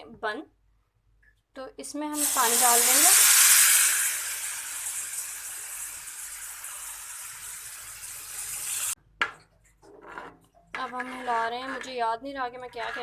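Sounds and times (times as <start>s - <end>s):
water sizzling in hot pan: 2.2s - 9.0s.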